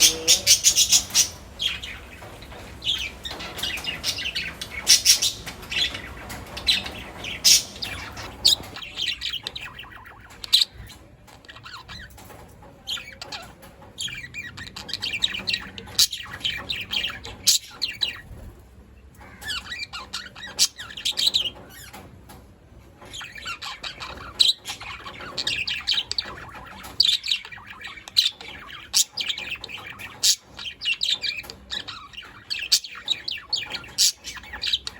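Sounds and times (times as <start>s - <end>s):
budgerigars chirping and squawking: 0.0s - 18.6s, 19.2s - 22.1s, 23.0s - 34.9s.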